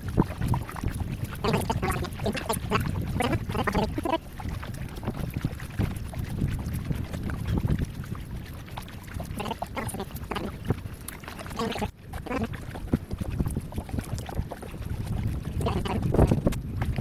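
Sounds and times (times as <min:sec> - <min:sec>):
paddle splashing water: 0:00.0 - 0:17.0.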